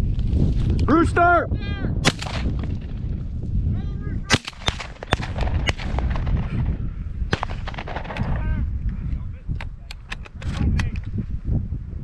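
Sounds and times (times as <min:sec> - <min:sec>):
wind rumbling on microphone: 0:00.0 - 0:12.0
shotgun shots: 0:02.0 - 0:02.8, 0:04.3 - 0:06.6, 0:07.3 - 0:08.4.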